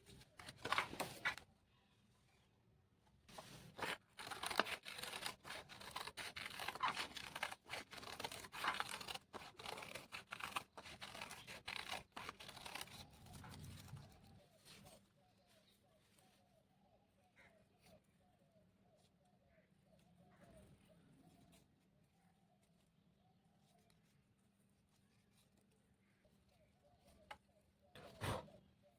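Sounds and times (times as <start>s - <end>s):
paper rustling and scraping: 0.0s - 1.4s, 3.3s - 15.1s.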